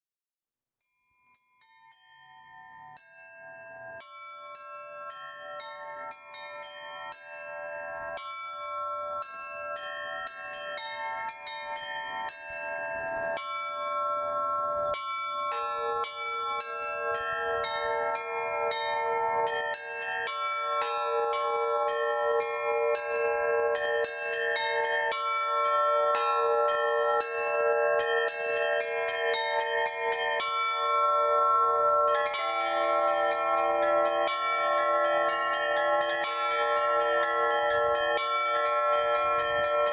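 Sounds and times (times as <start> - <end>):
small church bells pealing: 13.9 - 39.9.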